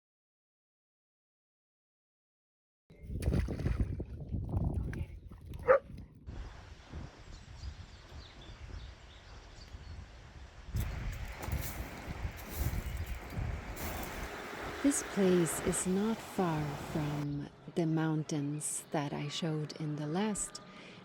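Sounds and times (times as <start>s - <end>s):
wind buffeting microphone: 2.9s - 17.2s
river water flowing: 13.2s - 17.2s.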